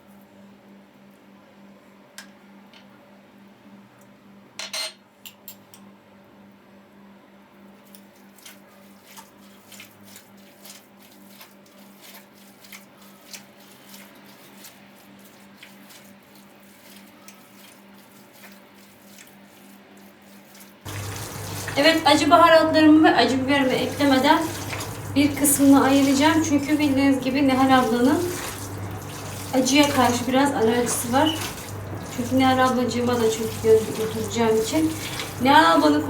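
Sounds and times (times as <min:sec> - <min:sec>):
hands squelching meat mixture: 0:08.3 - 0:36.0.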